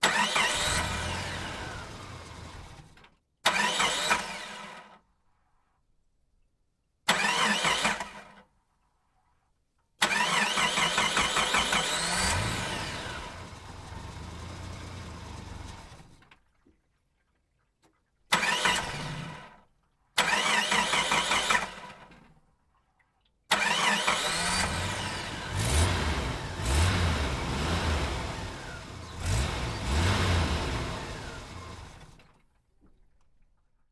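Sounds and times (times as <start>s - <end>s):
engine revving: 0.0s - 2.8s, 10.2s - 16.1s, 23.5s - 32.2s
vehicle engine starting: 0.0s - 4.9s, 7.1s - 8.4s, 10.0s - 16.4s, 18.3s - 19.6s, 20.2s - 22.2s, 23.5s - 32.4s.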